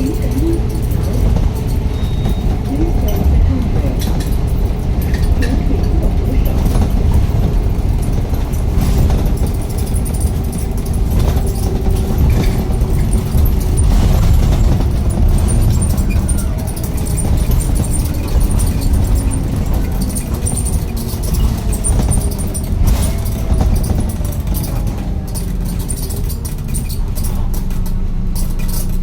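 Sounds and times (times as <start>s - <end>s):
street traffic: 0.0s - 29.0s
vehicle engine rumbling: 0.0s - 29.0s.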